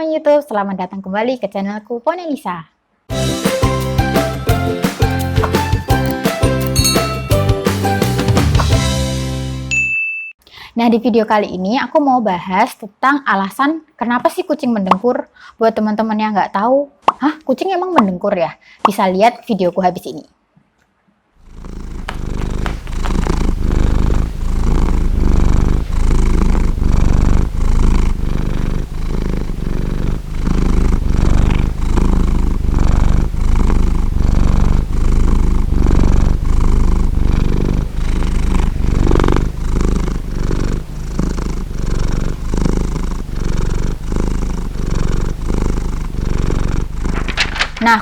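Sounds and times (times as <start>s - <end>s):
cat purring: 21.4s - 48.0s.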